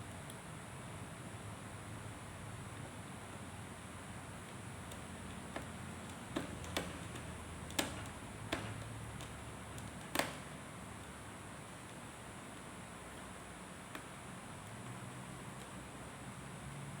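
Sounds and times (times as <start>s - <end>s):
small clicks and taps: 4.4s - 11.2s, 11.8s - 15.8s.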